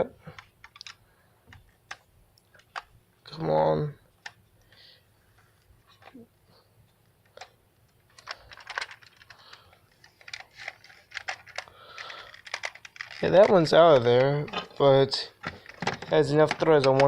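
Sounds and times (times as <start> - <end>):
plastic parts handled: 0.2 - 3.0, 7.2 - 17.0.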